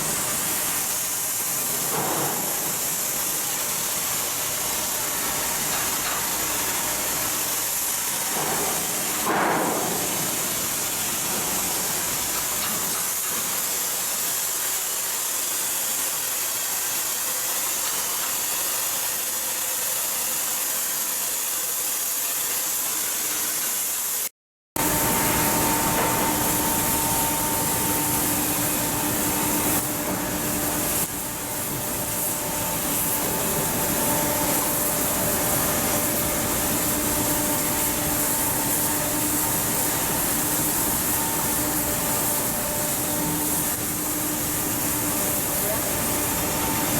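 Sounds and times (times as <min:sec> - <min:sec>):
machine hum with steady tones: 0:24.8 - 0:46.9
steady hissing: 0:25.6 - 0:46.9.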